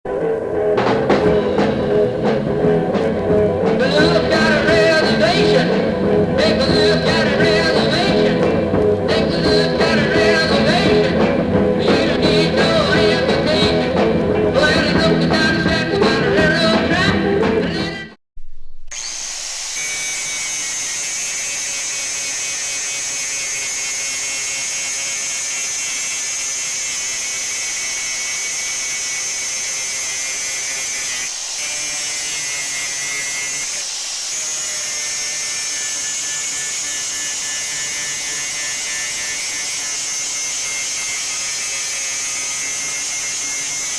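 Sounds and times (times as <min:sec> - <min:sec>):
rock music: 0:00.1 - 0:18.2
electric grinder whining: 0:18.9 - 0:43.9.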